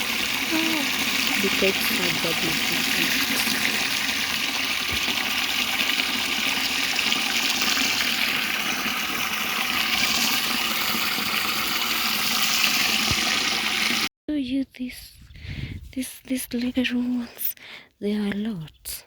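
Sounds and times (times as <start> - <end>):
water gushing from a tap: 0.0 - 14.1.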